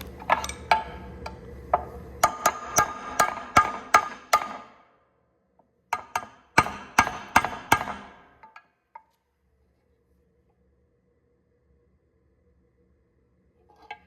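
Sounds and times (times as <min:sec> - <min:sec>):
hammer striking metal: 0:02.2 - 0:04.8, 0:06.0 - 0:08.6.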